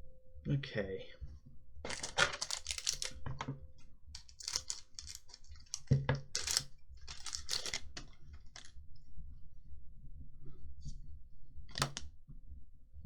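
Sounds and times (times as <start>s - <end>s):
cards and wrapper rustling: 1.9s - 3.2s, 4.2s - 8.7s.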